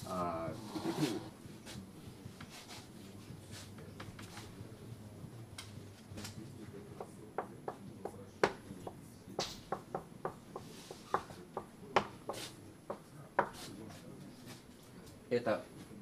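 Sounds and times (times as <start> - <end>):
marker tapping and scratching: 6.9 - 14.0.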